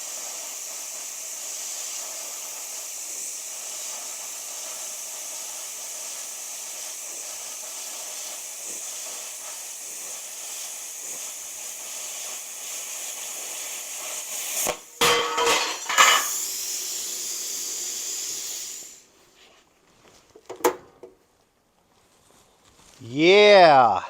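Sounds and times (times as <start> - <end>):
hiss of steel plate cutting: 0.0 - 19.2
loud metal clanks: 15.0 - 16.3.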